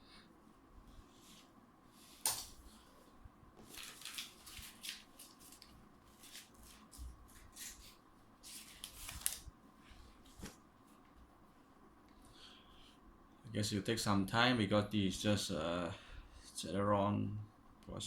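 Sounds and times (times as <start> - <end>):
rustling and handling noises: 0.5 - 13.1.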